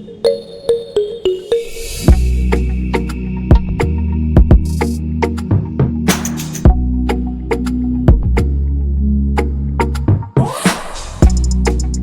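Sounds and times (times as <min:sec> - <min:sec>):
deep sustained bass: 0:02.1 - 0:10.0.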